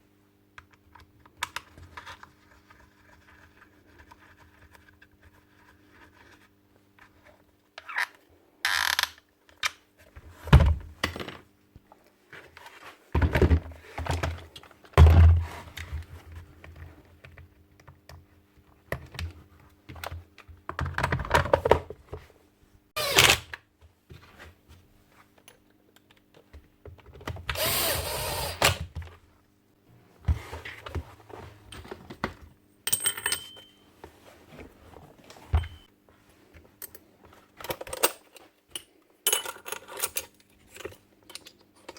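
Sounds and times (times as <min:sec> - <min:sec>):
faint steady hum: 0:23.6 - 0:41.9.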